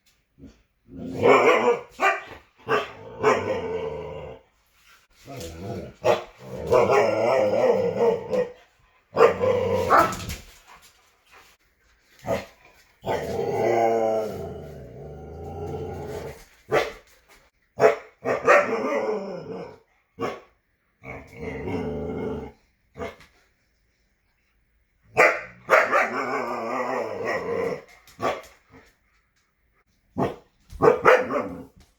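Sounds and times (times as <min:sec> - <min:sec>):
gruff growly barks: 0:00.4 - 0:04.4, 0:05.2 - 0:10.4, 0:12.2 - 0:16.9, 0:17.8 - 0:23.2, 0:25.2 - 0:28.5, 0:30.2 - 0:31.8.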